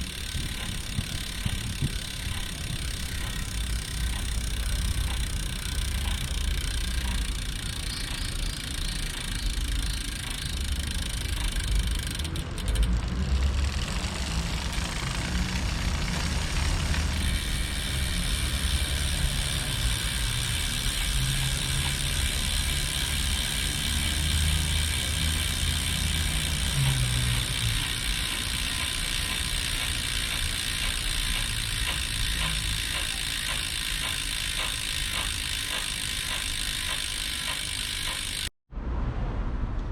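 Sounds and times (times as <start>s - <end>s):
bicycle wheels rumbling: 0.0s - 38.5s
rear hub mechanical noise: 0.0s - 38.5s.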